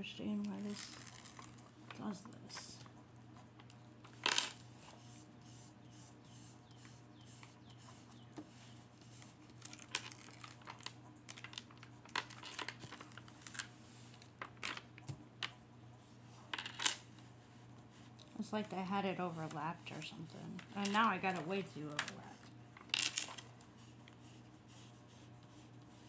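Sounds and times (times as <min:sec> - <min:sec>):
plastic film crinkling: 0:00.4 - 0:01.8, 0:09.2 - 0:14.8.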